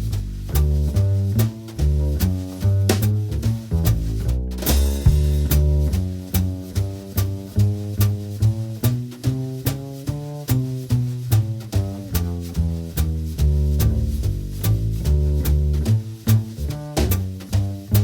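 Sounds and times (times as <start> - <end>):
upbeat instrumental music: 4.6 - 5.8.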